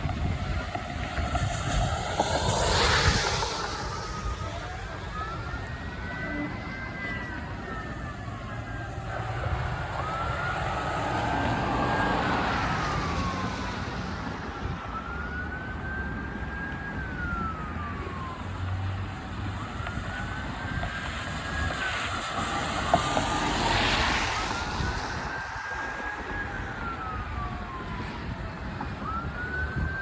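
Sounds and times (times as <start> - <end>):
fire truck siren wailing: 0.0 - 30.0
traffic and engine noise: 0.0 - 30.0.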